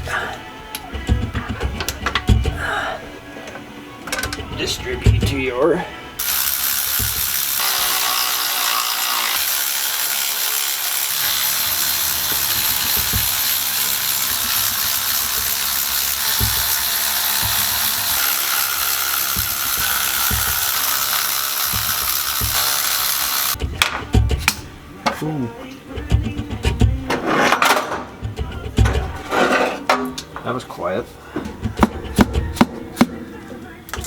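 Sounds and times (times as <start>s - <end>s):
ratchet wrench clicking: 6.2s - 23.6s.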